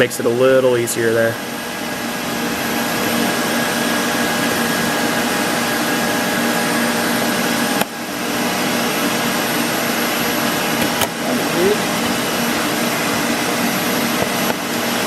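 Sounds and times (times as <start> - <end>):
machinery running: 8.4 - 15.0.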